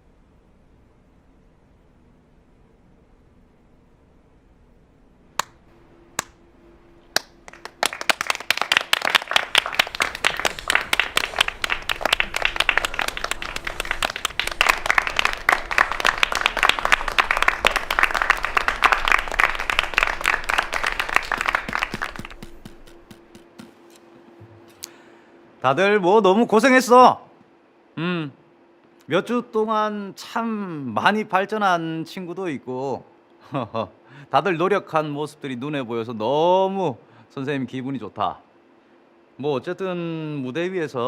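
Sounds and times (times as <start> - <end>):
small group applauding: 7.1 - 23.7.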